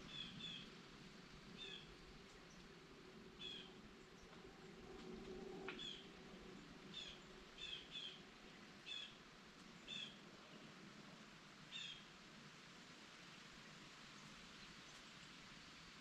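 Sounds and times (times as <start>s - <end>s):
background hiss: 0.0s - 16.0s.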